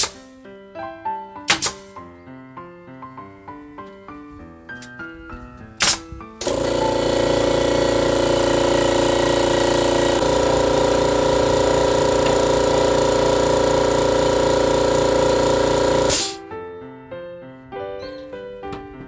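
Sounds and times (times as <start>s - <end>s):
power tool motor running: 6.4s - 16.4s.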